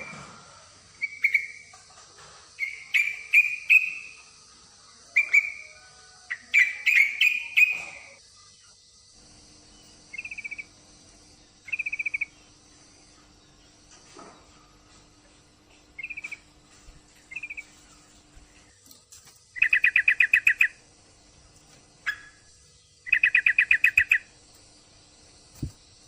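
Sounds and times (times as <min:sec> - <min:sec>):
bird trills: 0:01.0 - 0:01.7, 0:02.6 - 0:04.2, 0:06.3 - 0:08.2, 0:10.0 - 0:10.7, 0:11.6 - 0:12.4, 0:16.0 - 0:16.4, 0:17.3 - 0:18.0, 0:19.6 - 0:20.8, 0:22.0 - 0:24.3
bird chirping: 0:01.0 - 0:01.8, 0:02.6 - 0:04.2, 0:06.4 - 0:08.2, 0:09.7 - 0:10.8, 0:11.4 - 0:12.6, 0:16.0 - 0:16.5, 0:17.2 - 0:18.7, 0:19.6 - 0:20.8, 0:22.0 - 0:24.3.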